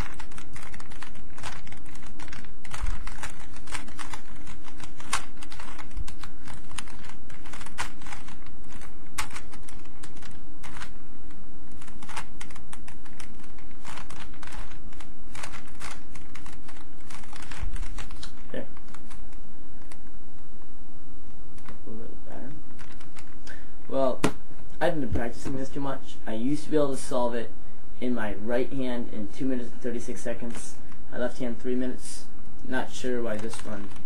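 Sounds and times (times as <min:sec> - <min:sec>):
puzzle cube clicking: 0:00.0 - 0:10.9, 0:11.7 - 0:19.2.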